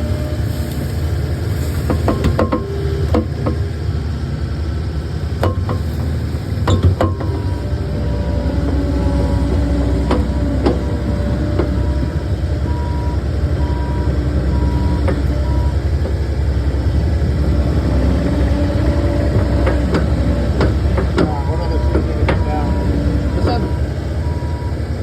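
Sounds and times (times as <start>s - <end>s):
diesel engine running: 0.0s - 25.0s
metal clanks: 5.4s - 12.2s.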